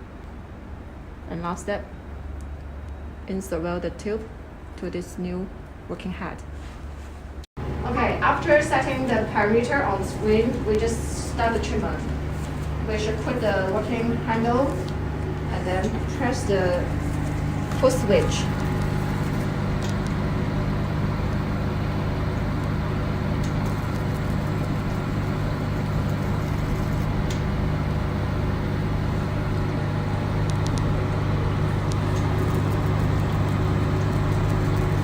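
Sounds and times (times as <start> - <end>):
laser machine humming: 7.6 - 35.0.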